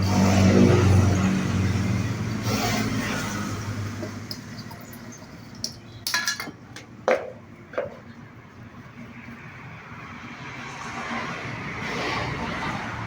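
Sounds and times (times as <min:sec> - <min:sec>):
hard objects clinking and knocking: 0:04.0 - 0:08.1.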